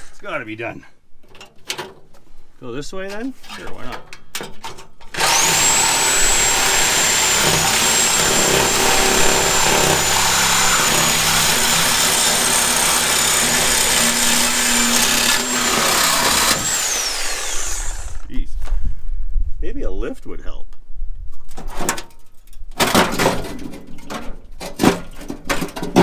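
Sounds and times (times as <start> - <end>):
reciprocating saw cutting metal: 5.1 - 18.3.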